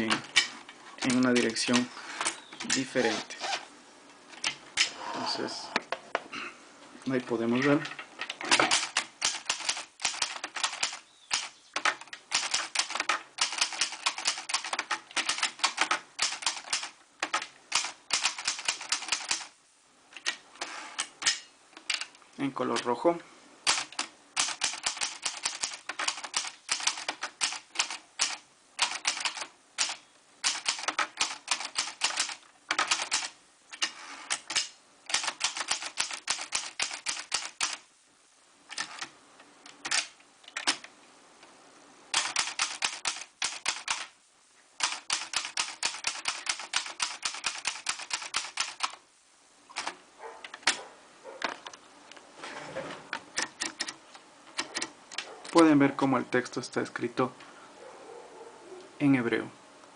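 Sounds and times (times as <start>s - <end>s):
typewriter key strikes: 8.5s - 19.5s, 23.7s - 33.3s, 34.3s - 37.8s, 42.2s - 44.1s, 44.8s - 49.0s.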